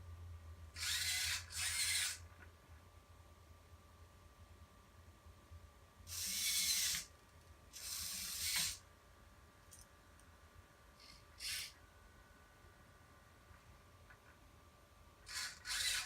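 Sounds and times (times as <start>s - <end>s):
servos whirring: 0.8s - 2.2s, 6.1s - 7.1s, 7.7s - 8.8s, 11.0s - 11.8s, 15.3s - 16.0s.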